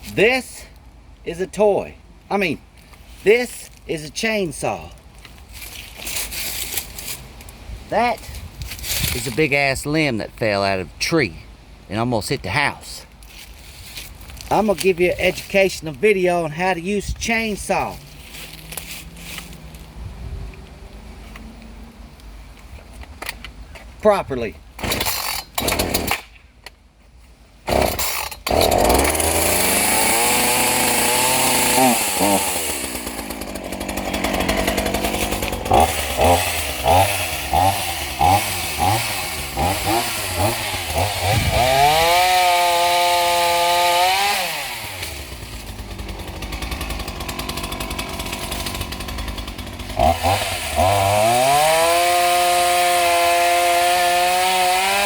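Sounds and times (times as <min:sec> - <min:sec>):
chainsaw starting and revving: 0:17.2 - 0:19.9, 0:24.8 - 0:26.3, 0:27.6 - 0:55.0.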